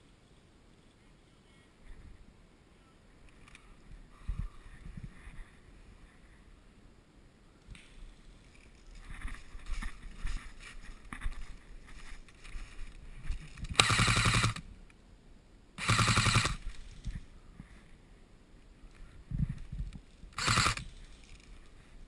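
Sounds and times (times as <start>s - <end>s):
rustling of movement: 7.6s - 15.0s, 15.8s - 22.0s
airsoft gun full-auto bursts: 13.8s - 14.6s, 15.8s - 16.8s, 20.4s - 20.9s.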